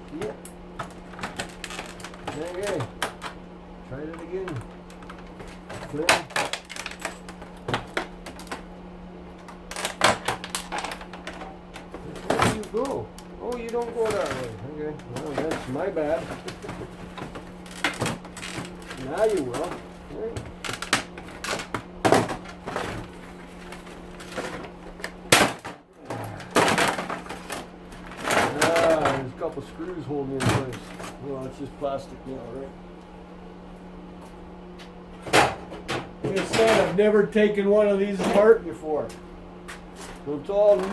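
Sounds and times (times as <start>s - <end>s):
steady hum: 0.0s - 40.9s
plastic parts clicking and clattering: 0.2s - 3.4s, 4.0s - 8.6s, 9.4s - 29.4s, 35.3s - 37.0s, 40.6s - 40.9s.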